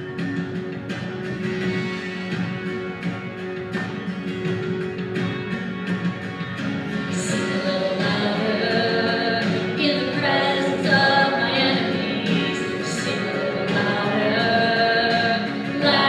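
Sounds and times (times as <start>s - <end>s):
acoustic guitar: 0.0s - 16.0s
person singing worship song: 7.2s - 16.0s.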